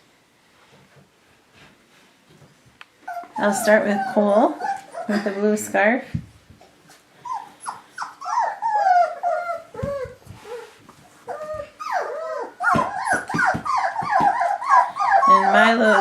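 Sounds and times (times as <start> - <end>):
puppies whimpering and yipping: 3.0 - 5.6, 6.6 - 16.0.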